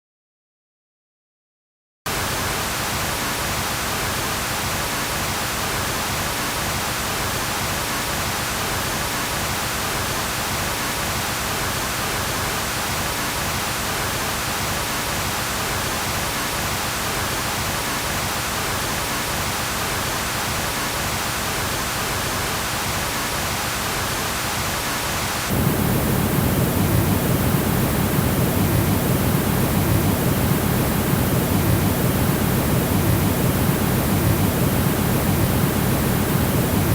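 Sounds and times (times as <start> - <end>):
steady hiss of noise: 2.1 - 36.9
deep rushing noise: 25.5 - 36.9.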